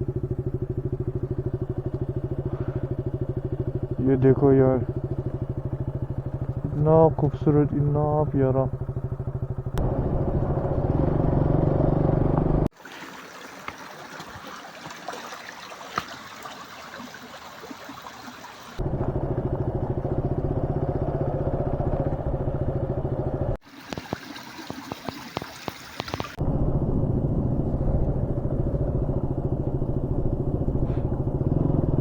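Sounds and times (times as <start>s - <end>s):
motorcycle engine running: 0.0s - 12.7s, 18.8s - 23.7s, 26.0s - 32.0s.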